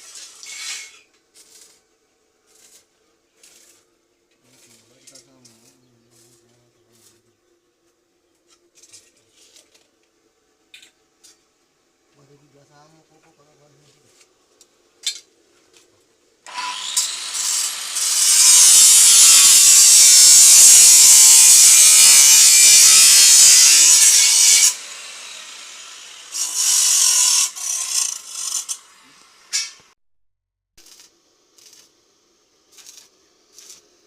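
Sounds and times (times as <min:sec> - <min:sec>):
power tool grinding metal: 0:16.5 - 0:29.9.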